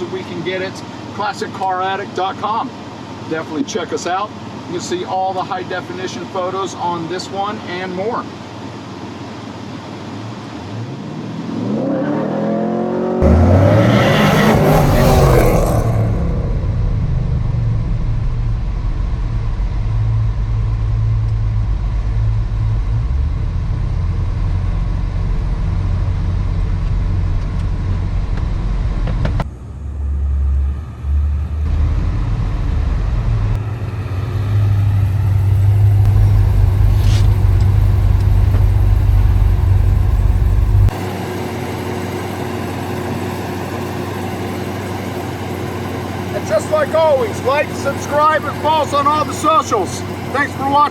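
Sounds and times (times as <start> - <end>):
engine exhaust deep rumble: 12.6 - 50.9.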